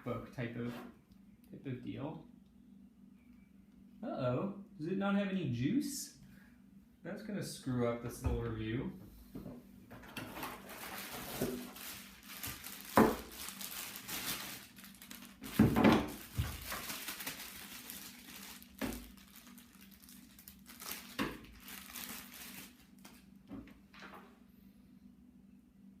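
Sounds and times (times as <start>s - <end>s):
packaging crinkling and rustling: 10.0s - 23.3s.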